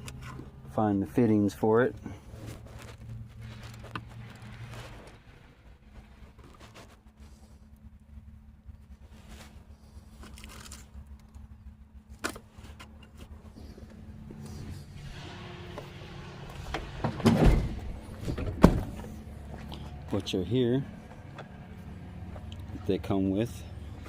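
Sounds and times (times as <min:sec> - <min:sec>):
parts knocking and clunking: 0:16.5 - 0:19.7.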